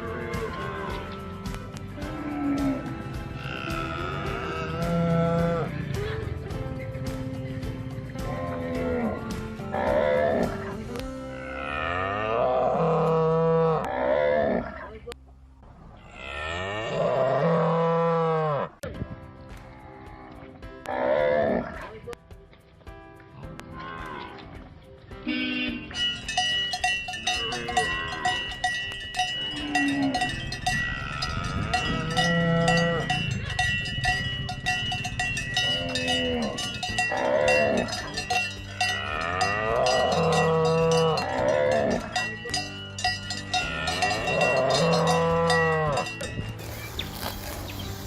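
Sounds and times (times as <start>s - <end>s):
cowbells clanking: 0.0s - 10.8s, 25.3s - 48.0s
cows mooing: 2.1s - 5.8s, 8.4s - 15.0s, 16.0s - 18.8s, 27.1s - 28.5s, 29.3s - 33.8s, 35.4s - 42.6s, 43.2s - 46.4s.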